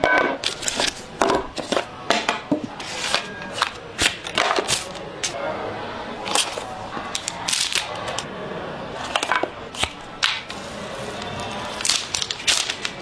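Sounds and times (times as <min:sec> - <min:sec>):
packaging clicks and crackles: 0:00.4 - 0:01.9, 0:02.6 - 0:05.4, 0:06.3 - 0:08.3, 0:09.0 - 0:13.0.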